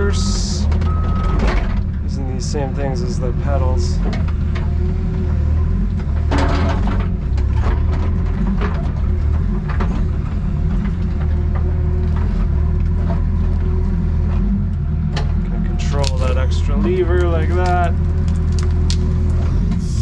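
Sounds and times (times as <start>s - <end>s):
excavator diesel engine running: 0.0s - 20.0s
clanks and clicks: 0.6s - 2.0s, 4.0s - 4.8s, 5.9s - 13.3s.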